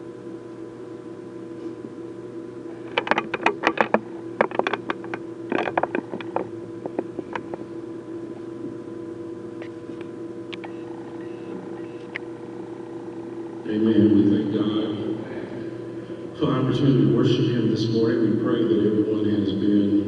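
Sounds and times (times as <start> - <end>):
steady hum: 0.0 - 20.0
sharp clicks and light knocks: 2.9 - 7.6.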